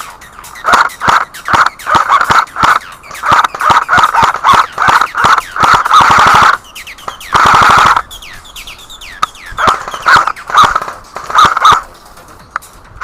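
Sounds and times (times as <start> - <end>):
airsoft guns firing bursts: 0.6 - 8.0, 9.6 - 11.9.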